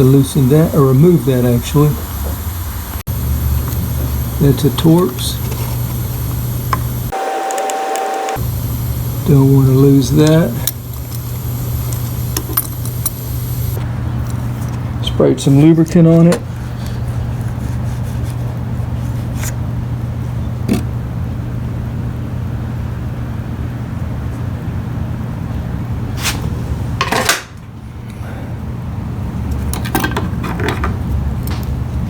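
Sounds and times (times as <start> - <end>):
low hum: 1.5 - 14.8.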